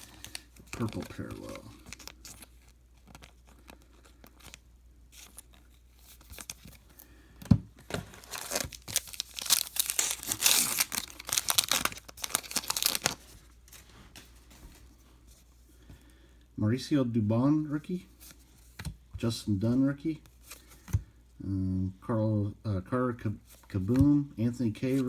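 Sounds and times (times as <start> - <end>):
wrapper crinkling and tearing: 0.0 - 4.6, 7.9 - 13.8.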